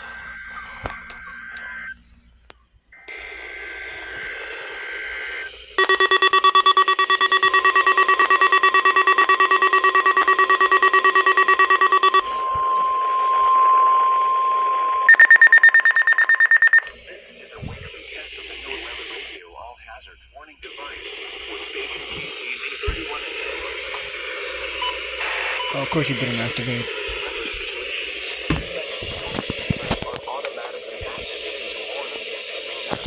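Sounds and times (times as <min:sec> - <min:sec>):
radio static: 0:00.0 - 0:02.0, 0:03.0 - 0:33.0
pulsing electronic alarm: 0:00.0 - 0:02.2, 0:03.0 - 0:19.3, 0:20.7 - 0:33.0
warbling digital data tones: 0:05.4 - 0:16.9
rapid pulsed beeping: 0:05.4 - 0:19.3, 0:20.7 - 0:29.4
steady single tone: 0:05.8 - 0:17.0.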